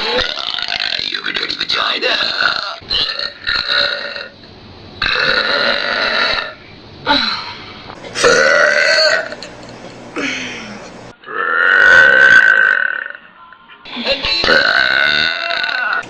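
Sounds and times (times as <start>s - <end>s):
person burping loudly: 0.0s - 1.0s, 2.1s - 4.4s, 5.0s - 6.6s, 8.1s - 9.5s, 10.2s - 13.2s, 14.4s - 16.0s.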